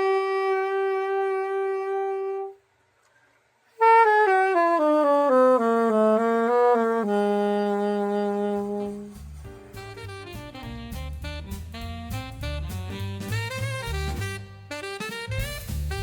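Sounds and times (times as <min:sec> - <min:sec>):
soprano saxophone solo: 0:00.0 - 0:02.7, 0:03.8 - 0:16.0.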